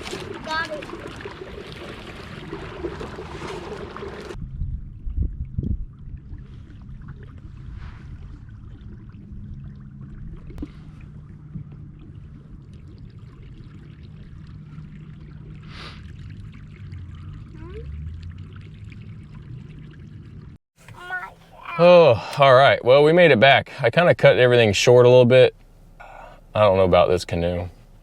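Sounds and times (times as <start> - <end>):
water splashing along canoe hull: 0.0 - 4.4, 5.4 - 21.9
steady low hum: 4.4 - 28.0.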